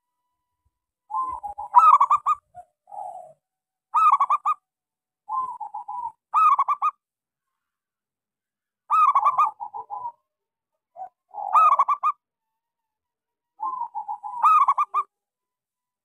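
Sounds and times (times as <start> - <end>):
dove cooing: 1.1 - 3.4, 5.3 - 6.9, 8.9 - 10.3, 10.9 - 12.2, 13.6 - 15.1.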